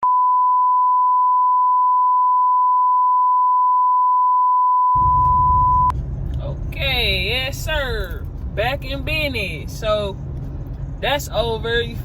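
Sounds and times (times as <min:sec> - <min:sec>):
high electronic beep tone: 0:00.0 - 0:05.9
low rumble: 0:05.0 - 0:12.0.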